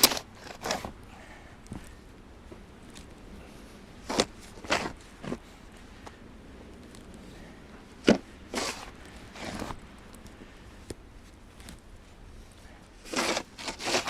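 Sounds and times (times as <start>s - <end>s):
shovel scraping snow: 4.0s - 5.4s, 8.1s - 9.8s, 13.0s - 14.0s
snow shovel hitting: 13.1s - 14.0s.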